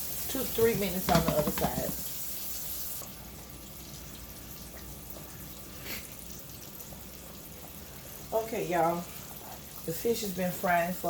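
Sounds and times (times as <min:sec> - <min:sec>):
fish deep frying in oil: 0:00.0 - 0:11.0
oil popping: 0:00.2 - 0:02.2.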